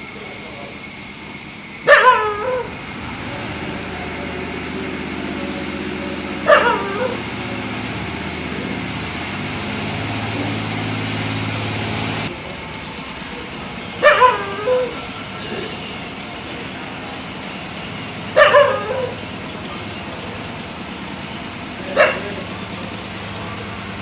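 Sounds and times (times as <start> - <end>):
steady mechanical drone: 0.0 - 24.0
dog barking: 1.8 - 2.8, 6.4 - 7.7, 14.0 - 15.0, 18.3 - 19.2, 21.8 - 22.4.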